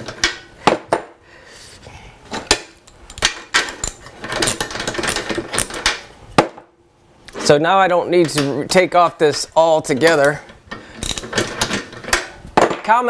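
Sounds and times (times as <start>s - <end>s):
metal tools clinking: 2.4s - 6.0s, 8.2s - 12.4s.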